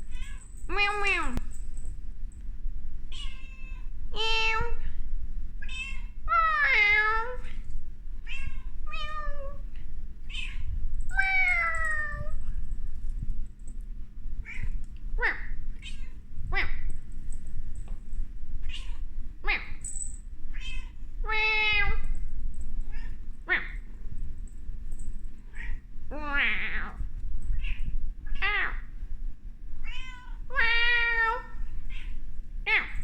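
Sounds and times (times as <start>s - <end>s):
cat meowing: 8.2s - 9.6s.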